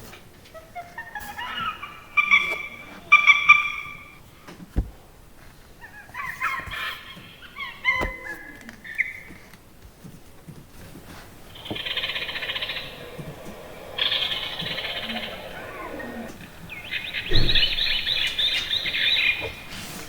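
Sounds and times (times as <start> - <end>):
recorded animal calls from speaker: 0.5 - 4.4, 11.4 - 19.8.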